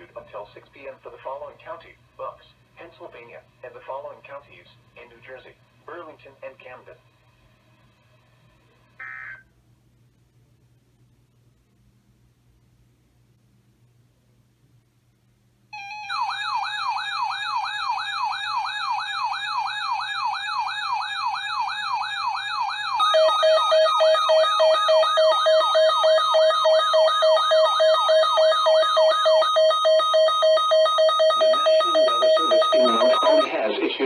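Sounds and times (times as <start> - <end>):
electronic siren yelping: 9.0 - 9.5, 15.8 - 33.5
pulsing steady tone: 22.8 - 33.5.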